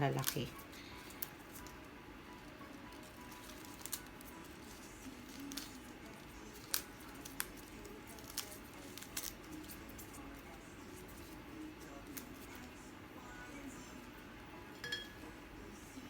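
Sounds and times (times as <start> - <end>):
scissors snipping stems: 0.1 - 1.7, 3.3 - 10.2.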